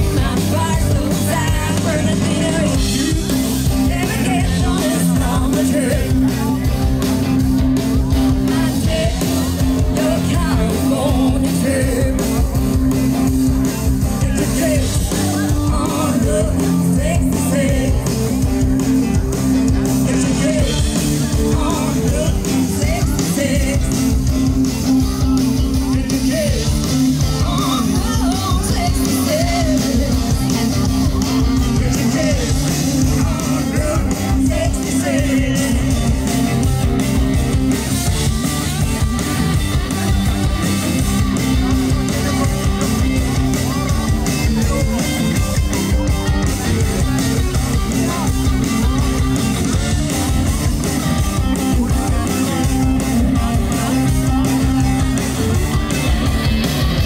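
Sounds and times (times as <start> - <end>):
rock music with singing: 0.0 - 57.0.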